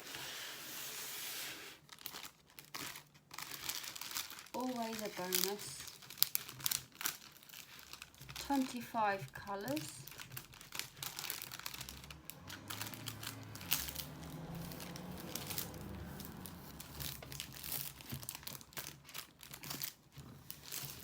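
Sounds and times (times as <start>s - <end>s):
plastic packaging crinkling: 1.7s - 21.0s.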